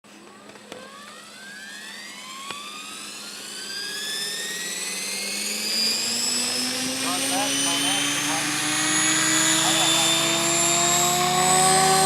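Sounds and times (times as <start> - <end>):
mechanical whine rising in pitch: 0.7 - 12.0
low hum: 5.5 - 12.0.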